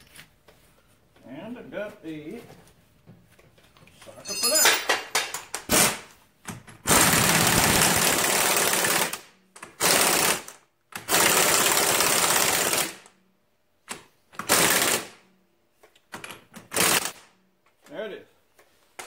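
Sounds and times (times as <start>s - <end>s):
impact wrench bursts: 6.9s - 9.2s.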